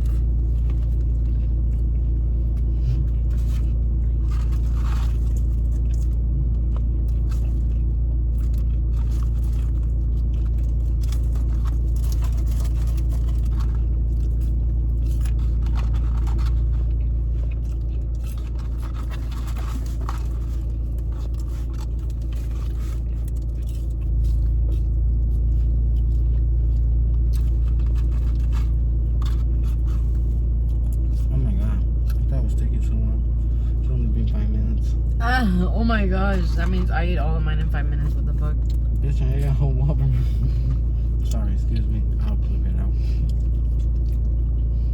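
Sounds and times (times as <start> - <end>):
car engine idling: 0.0 - 44.9
scrapes and rustles: 2.6 - 6.2, 7.1 - 31.5.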